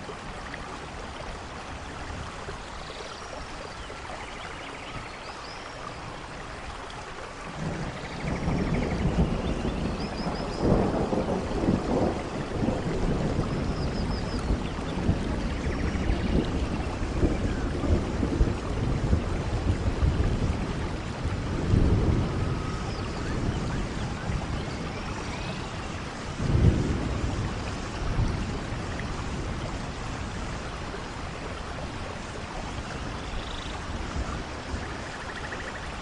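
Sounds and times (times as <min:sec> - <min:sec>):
heavy rain: 0:00.0 - 0:36.0
thunder rolling: 0:07.6 - 0:30.6.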